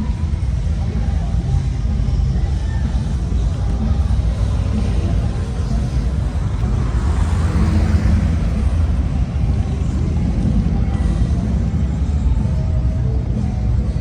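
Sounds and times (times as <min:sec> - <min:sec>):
motorcycle engines rumbling: 0:00.0 - 0:14.0
motorcycle passing: 0:03.0 - 0:12.8.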